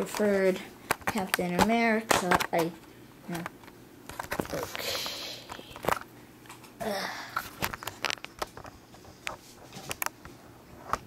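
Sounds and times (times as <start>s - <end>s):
packaging crinkling rustle: 7.4s - 10.0s.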